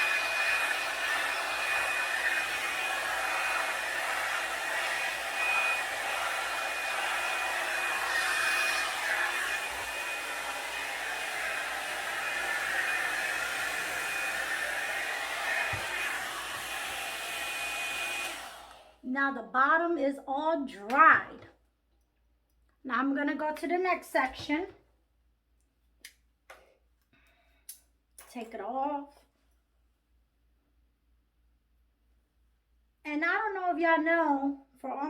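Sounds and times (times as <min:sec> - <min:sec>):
hair dryer brush blowing: 0:00.0 - 0:19.0.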